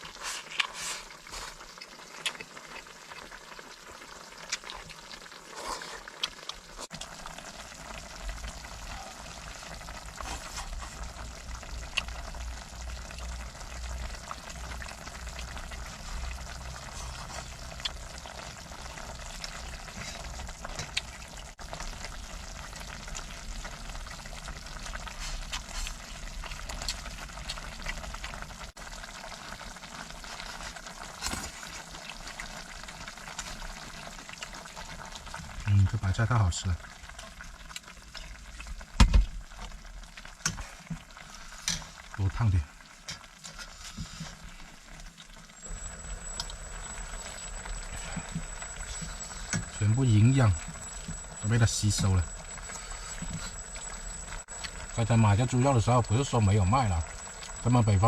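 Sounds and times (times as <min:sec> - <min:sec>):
stew sizzling and bubbling: 0:00.0 - 0:58.0
low hum: 0:45.5 - 0:58.0.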